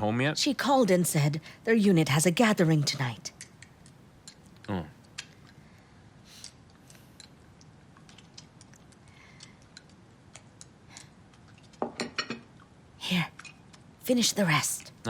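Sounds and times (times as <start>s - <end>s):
chopsticks clicking against bowls: 3.3s - 5.6s, 6.4s - 11.8s, 13.3s - 13.8s.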